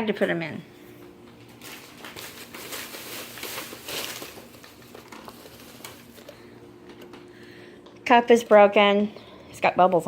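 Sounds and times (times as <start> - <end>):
bags and packaging rustling: 1.0 - 7.3
small clicks and crackles: 1.5 - 7.2.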